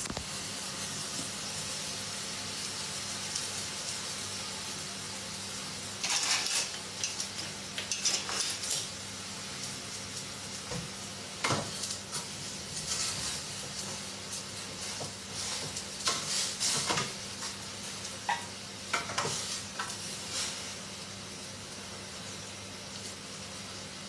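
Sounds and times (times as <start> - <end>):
food sizzling in a pan: 0.0 - 24.0
utensil scraping a pan: 6.0 - 8.9.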